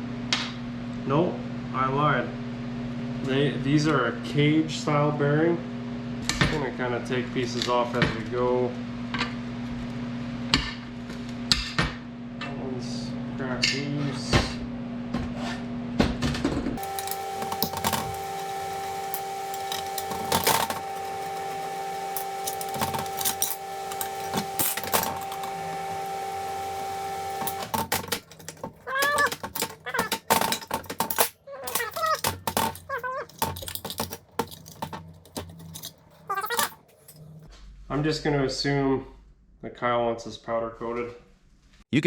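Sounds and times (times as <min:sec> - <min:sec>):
steady hum: 0:16.8 - 0:37.2
metal tools clicking and clattering: 0:16.8 - 0:37.4.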